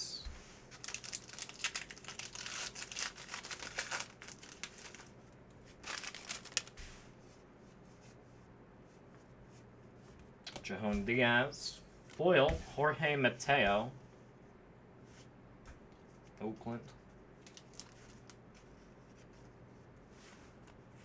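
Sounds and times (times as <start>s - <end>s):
foil wrapper tearing and crinkling: 0.7s - 6.8s, 17.4s - 18.4s.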